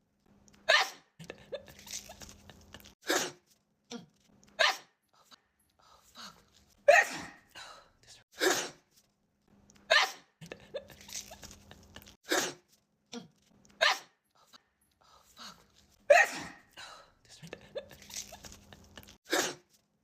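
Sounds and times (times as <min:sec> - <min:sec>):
woman sneezing: 0:06.9 - 0:07.4, 0:08.3 - 0:08.8, 0:16.1 - 0:16.7, 0:19.3 - 0:19.6
quiet breaths: 0:14.3 - 0:16.0.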